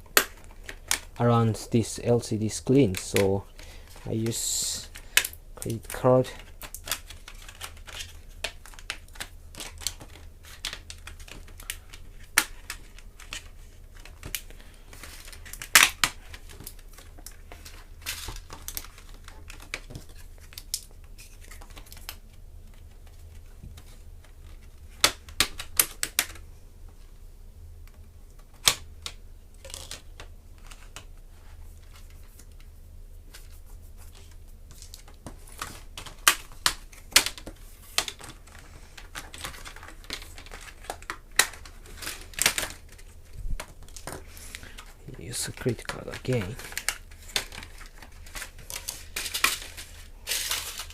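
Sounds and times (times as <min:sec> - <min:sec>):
plastic latches clicking and cracking: 0:34.8 - 0:44.9.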